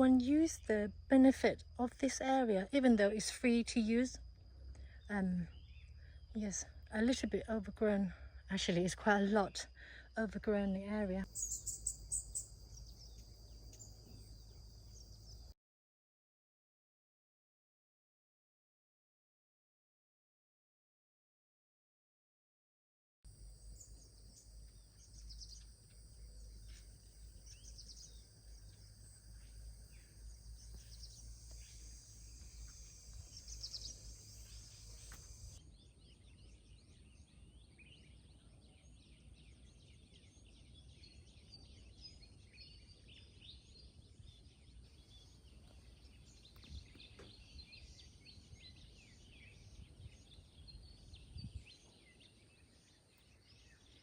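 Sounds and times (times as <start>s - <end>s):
bird chirps: 11.2s - 15.5s, 23.4s - 54.0s
high insect drone: 11.3s - 15.6s, 23.3s - 35.7s.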